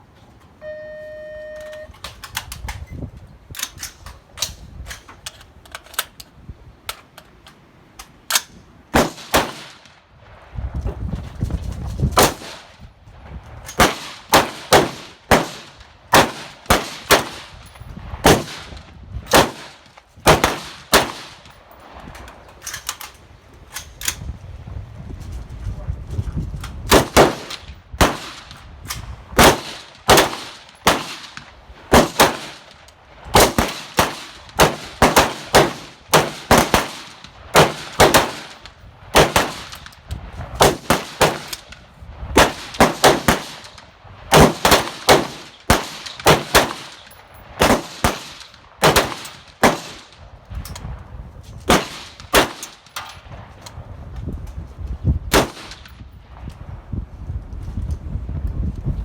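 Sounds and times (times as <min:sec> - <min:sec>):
rifle gunshots: 0:08.9 - 0:09.9, 0:12.2 - 0:12.7, 0:13.8 - 0:17.5, 0:18.2 - 0:21.5, 0:26.9 - 0:28.5, 0:29.4 - 0:32.7, 0:33.3 - 0:39.9, 0:40.6 - 0:41.7, 0:42.4 - 0:50.2, 0:51.7 - 0:53.0, 0:55.3 - 0:56.0.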